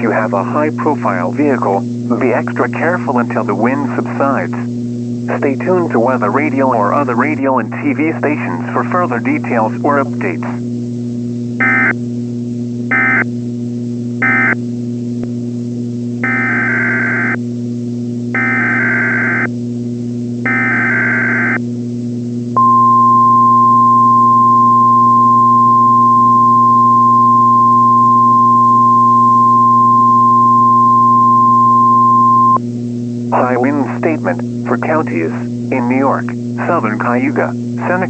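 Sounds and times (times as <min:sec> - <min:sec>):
electrical hum: 0:00.0 - 0:38.0
steady alarm tone: 0:11.6 - 0:12.0, 0:12.9 - 0:13.3, 0:14.2 - 0:14.6, 0:16.2 - 0:17.4, 0:18.3 - 0:19.5, 0:20.4 - 0:21.6, 0:22.6 - 0:32.6.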